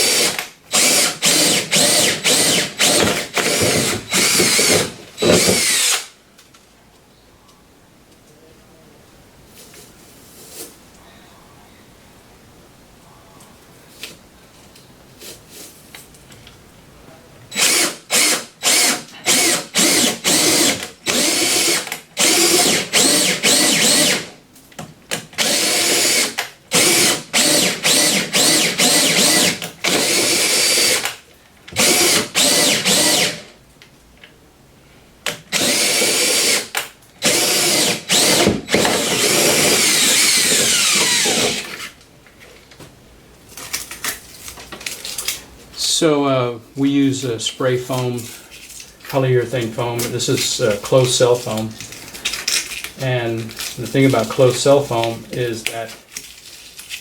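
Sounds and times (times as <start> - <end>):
electric power drill: 0.0 - 6.1, 17.5 - 24.3, 25.4 - 31.2, 31.8 - 33.5, 35.5 - 41.9.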